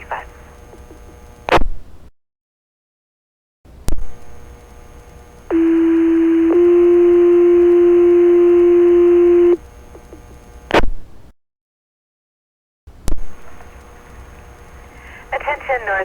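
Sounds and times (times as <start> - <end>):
radio squelch noise: 5.5 - 9.6
two-tone pager alert: 5.5 - 9.6.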